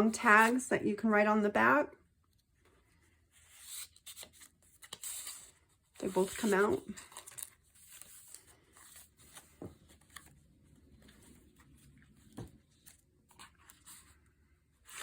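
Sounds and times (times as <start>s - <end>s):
paper rustling and sliding: 3.4s - 14.2s.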